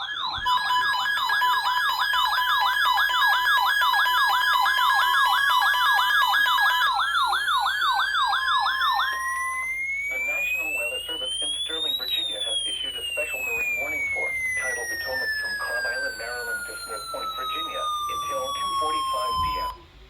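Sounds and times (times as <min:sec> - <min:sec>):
electronic siren yelping: 0:00.0 - 0:19.8
tone gliding upward: 0:07.0 - 0:19.8.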